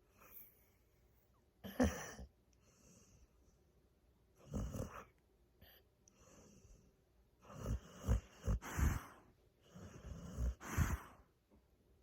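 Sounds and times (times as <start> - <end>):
dog snoring: 4.4 - 6.8, 7.4 - 11.3.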